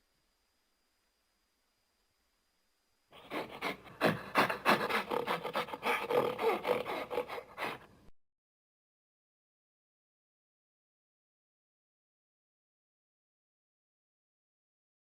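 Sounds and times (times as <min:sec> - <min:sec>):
gorilla pitched calls: 0:03.2 - 0:07.8
gorilla grunting: 0:03.2 - 0:07.9.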